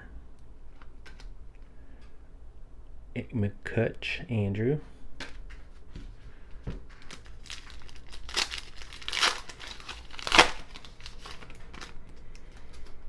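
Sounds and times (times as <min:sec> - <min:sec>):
wrapper crinkling and tearing: 0:06.9 - 0:12.9.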